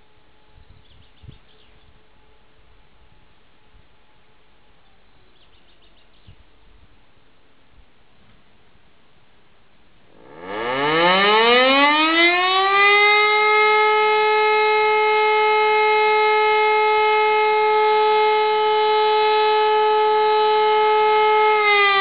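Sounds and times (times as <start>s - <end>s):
electric motor siren: 10.2s - 22.0s.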